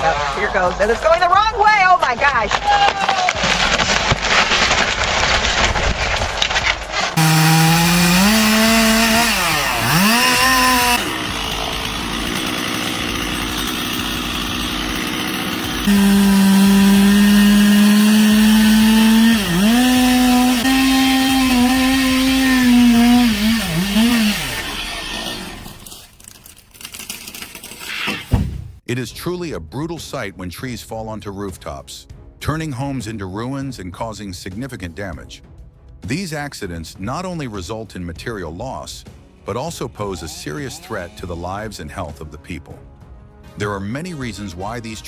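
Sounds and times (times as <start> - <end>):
rough noise: 3.0 - 26.5
chainsaw running at high revs: 7.2 - 26.0.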